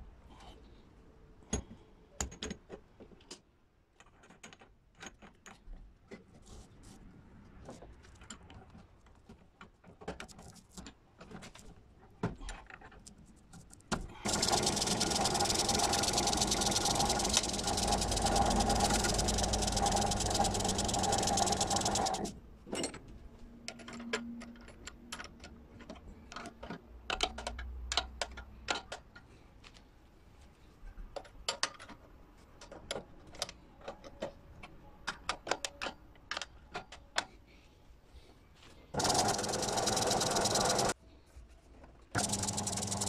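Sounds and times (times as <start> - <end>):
power tool motor running: 14.3 - 22.3, 39.0 - 40.9, 42.2 - 43.0.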